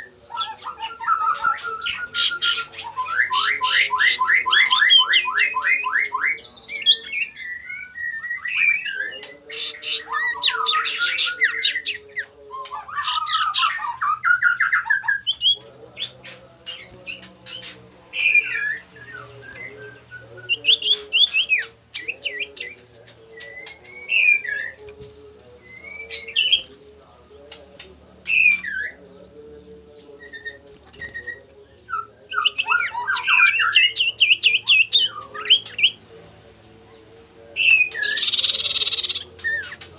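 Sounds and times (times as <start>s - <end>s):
bird rattling trills and chattering: 20.6s - 24.7s.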